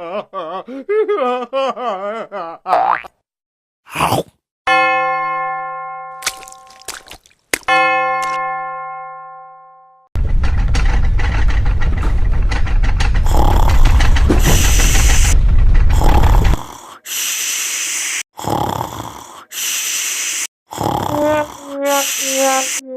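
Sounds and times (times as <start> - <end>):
low rattling cartoon snore: 13.2 - 22.8
hissing breaths: 13.3 - 22.8.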